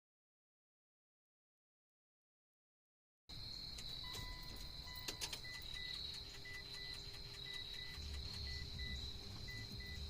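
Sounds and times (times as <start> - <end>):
crickets trilling: 3.3 - 10.0
small clicks: 3.7 - 10.0
faint electronic beep: 3.8 - 10.0.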